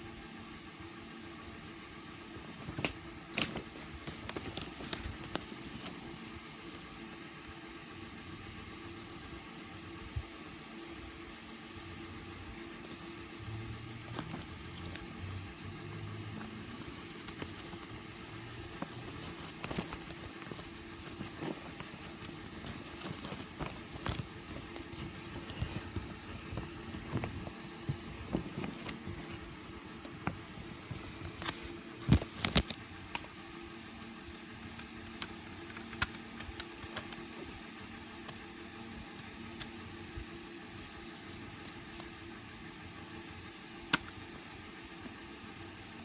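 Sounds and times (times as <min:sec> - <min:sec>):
steady low hum: 0:00.0 - 0:46.0
cd packaging clicks and taps: 0:02.6 - 0:06.0, 0:34.8 - 0:37.3, 0:43.8 - 0:44.2.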